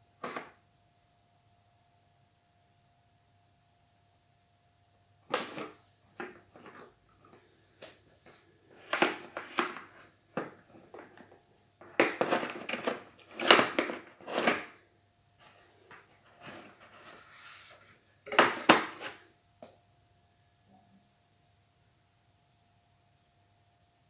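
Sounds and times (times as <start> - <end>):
objects rustling and clattering: 5.3 - 14.8, 15.4 - 19.4.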